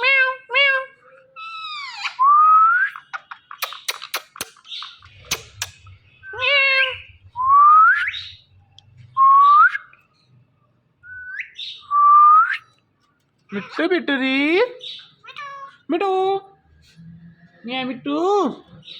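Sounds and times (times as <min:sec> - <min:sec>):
parrot clicks: 0:03.2 - 0:05.9
parrot mimicking meow: 0:06.2 - 0:07.1.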